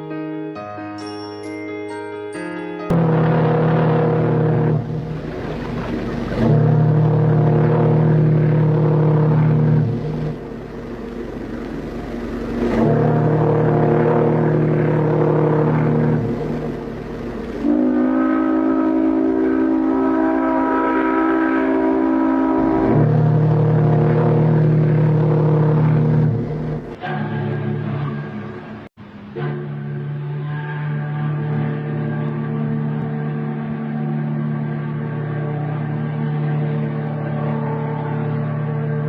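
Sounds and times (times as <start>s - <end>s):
deep ship whistle blasts: 2.9s - 28.6s, 29.3s - 39.0s
higher ship whistle: 12.5s - 26.0s.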